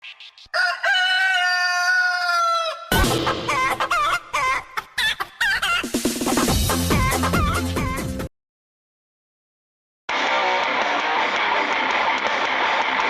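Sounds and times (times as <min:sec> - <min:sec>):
rooster-like crow: 0:00.5 - 0:02.9
music with clucking-like sounds: 0:02.9 - 0:08.3.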